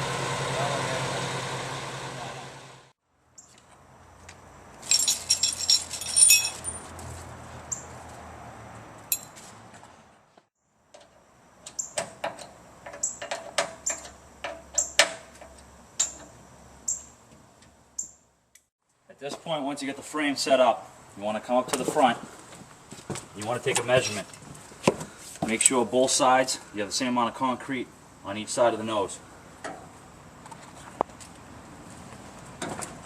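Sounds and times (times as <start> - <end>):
engine idling: 0.0 - 2.9
metallic clinking and jangling: 4.8 - 6.9.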